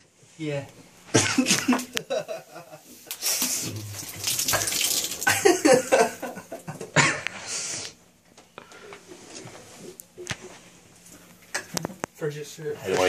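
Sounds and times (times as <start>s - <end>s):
beer gushing and splashing: 3.3s - 5.6s.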